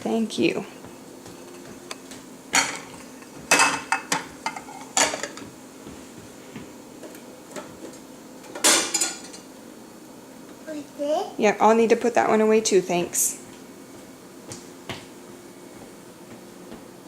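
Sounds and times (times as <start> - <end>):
dishes clattering: 1.4 - 5.5, 7.0 - 9.5.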